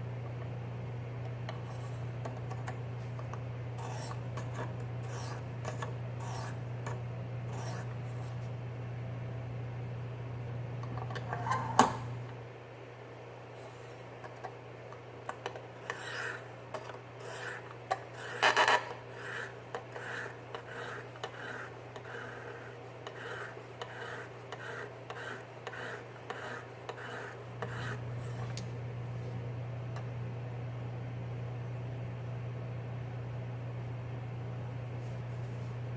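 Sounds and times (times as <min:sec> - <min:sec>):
hone scraping knife edge: 0:03.8 - 0:08.4, 0:15.8 - 0:28.8.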